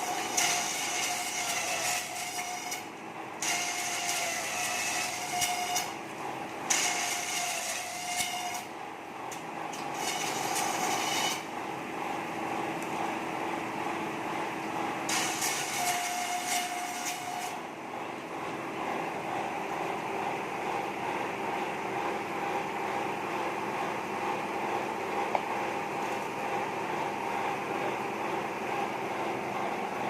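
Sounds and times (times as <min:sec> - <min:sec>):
harsh blade cutting noise: 0:00.0 - 0:06.0, 0:06.6 - 0:08.7, 0:09.7 - 0:11.5, 0:15.1 - 0:17.6.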